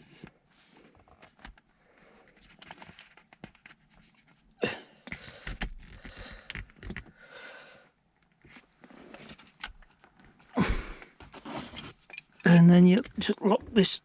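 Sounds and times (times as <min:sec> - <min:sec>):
person breathing: 0:04.6 - 0:08.0, 0:10.6 - 0:11.2.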